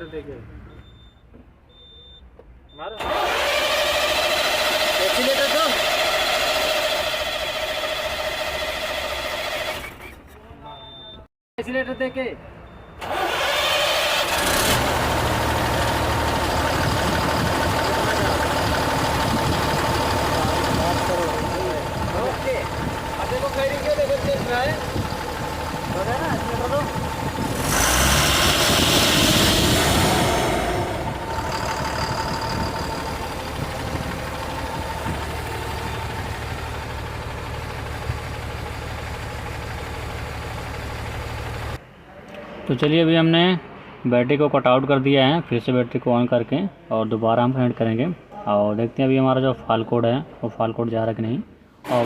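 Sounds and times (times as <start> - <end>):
diesel truck engine droning: 2.8 - 10.2, 12.0 - 41.8.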